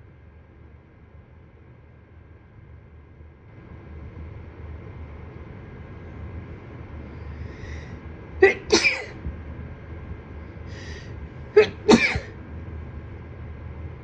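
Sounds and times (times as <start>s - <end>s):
short breath in: 7.3s - 8.0s, 10.7s - 11.1s
person sneezing: 8.4s - 9.2s, 11.6s - 12.3s.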